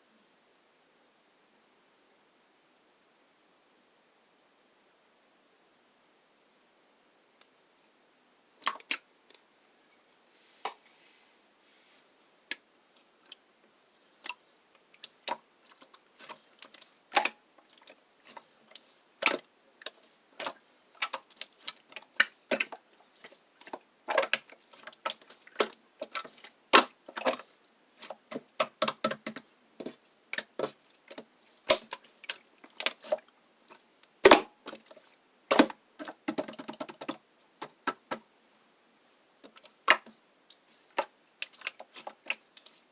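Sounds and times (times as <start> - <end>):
slime clicking and popping: 15.0 - 17.9, 19.2 - 38.2.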